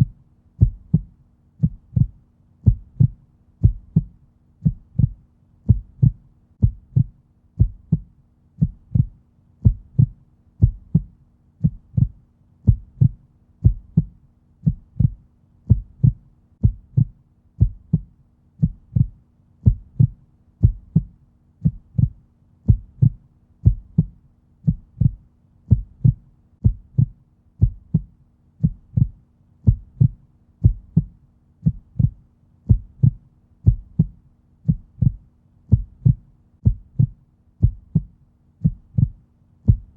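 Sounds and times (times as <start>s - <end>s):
heartbeat thumping: 0.0s - 39.9s.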